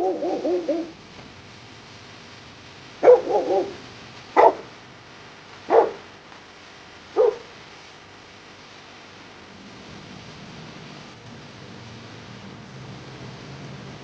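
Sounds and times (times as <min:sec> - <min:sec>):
dog barking: 0:00.0 - 0:01.0, 0:03.0 - 0:03.8, 0:04.4 - 0:04.8, 0:05.7 - 0:06.1, 0:07.1 - 0:07.6
dog wavering cry: 0:00.0 - 0:01.0, 0:03.0 - 0:03.8.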